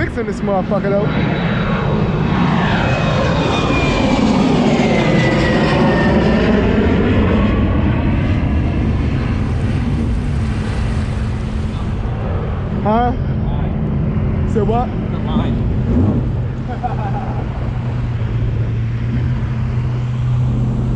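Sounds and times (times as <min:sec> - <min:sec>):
jet ski engine running: 0:09.4 - 0:20.9.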